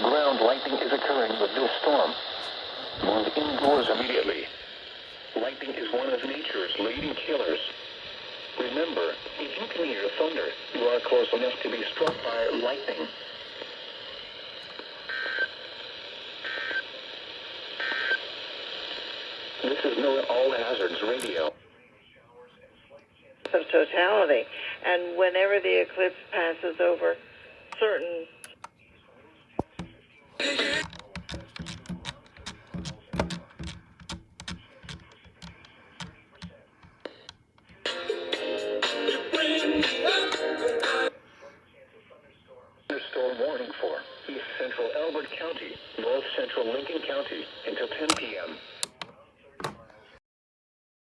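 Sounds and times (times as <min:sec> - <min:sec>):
radio hiss: 0:00.0 - 0:50.2
typing on computer keyboard: 0:30.7 - 0:37.0.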